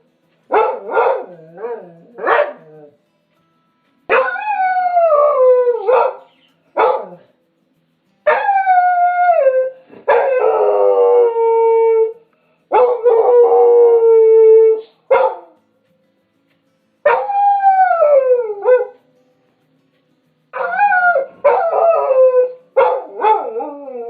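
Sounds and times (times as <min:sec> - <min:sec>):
dog howling: 0:04.1 - 0:06.2, 0:08.3 - 0:12.2, 0:17.1 - 0:19.0, 0:20.6 - 0:24.0.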